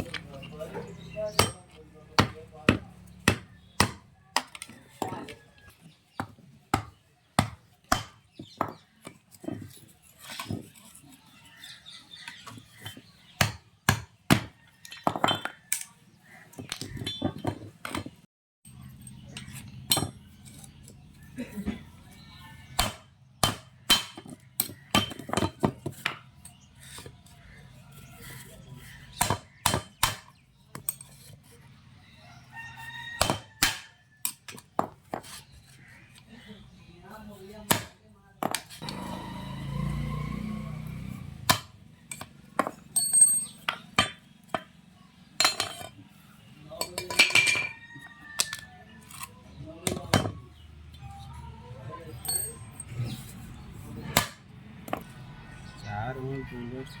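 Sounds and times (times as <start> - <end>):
rooster crowing: 32.2 - 34.2, 38.8 - 40.9, 47.6 - 49.0
ringing metal clinks: 43.0 - 43.6, 52.2 - 52.9.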